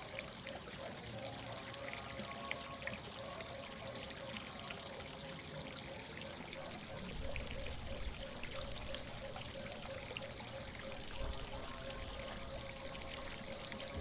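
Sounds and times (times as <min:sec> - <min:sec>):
faint steady hum: 0:00.0 - 0:14.0
running water: 0:00.0 - 0:14.0.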